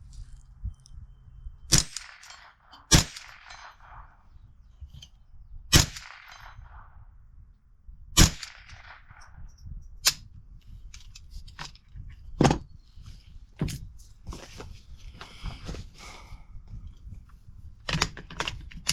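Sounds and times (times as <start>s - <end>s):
gunshots: 1.7s - 4.2s, 5.7s - 7.0s, 8.2s - 9.3s.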